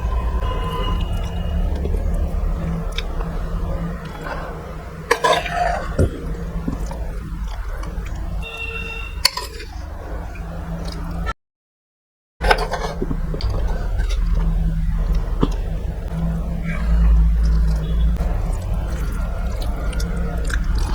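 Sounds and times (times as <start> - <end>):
steady low hum: 0.0 - 9.1, 12.4 - 20.9
person chewing: 1.0 - 8.2, 16.7 - 20.9.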